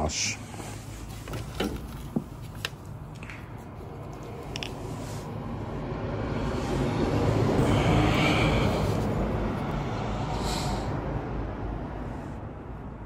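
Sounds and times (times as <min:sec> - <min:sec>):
vehicle passing by: 0:03.0 - 0:13.0.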